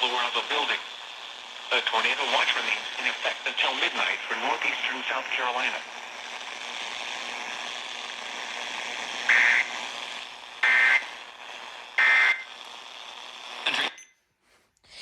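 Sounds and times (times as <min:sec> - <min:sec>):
radio static hiss: 0:00.0 - 0:14.0
short data bursts: 0:09.2 - 0:14.1.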